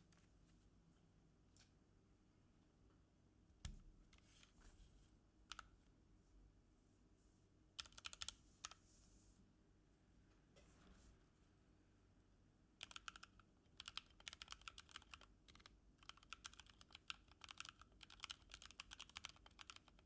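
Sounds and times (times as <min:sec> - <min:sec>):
mechanical keyboard clicks: 0:07.8 - 0:08.8, 0:12.8 - 0:20.0.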